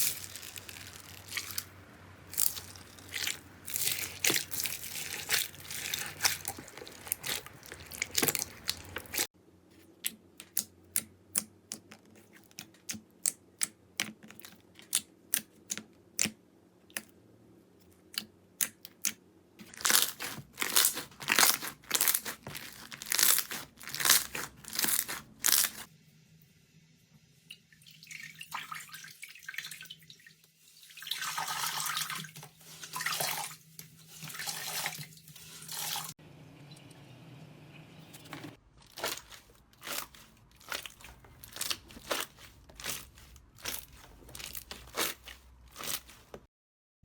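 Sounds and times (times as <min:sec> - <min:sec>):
slime wet crackling: 0:00.0 - 0:09.3, 0:18.1 - 0:25.9, 0:38.6 - 0:46.5
slime squishing: 0:00.0 - 0:17.2, 0:17.8 - 0:25.9, 0:38.2 - 0:46.5.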